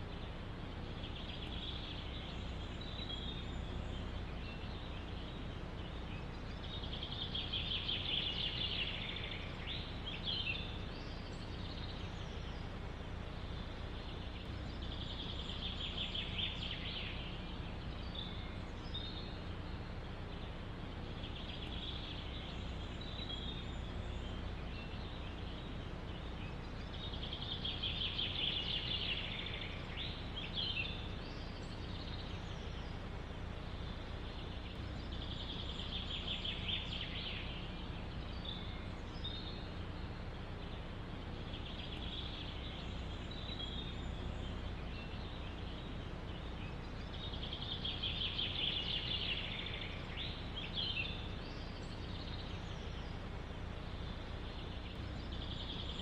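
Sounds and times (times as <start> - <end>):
songbird trilling: 0.0 - 12.7
bird chirps: 0.0 - 56.0
low rumble of wind: 0.0 - 56.0.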